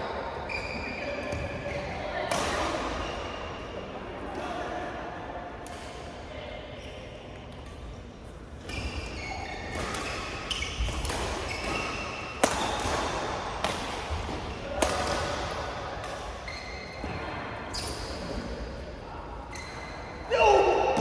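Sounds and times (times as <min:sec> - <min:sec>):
sneakers squeaking on floor: 0:00.1 - 0:02.2, 0:08.6 - 0:13.3, 0:16.3 - 0:18.5, 0:19.5 - 0:21.0
racket hitting shuttlecock: 0:10.8 - 0:16.4.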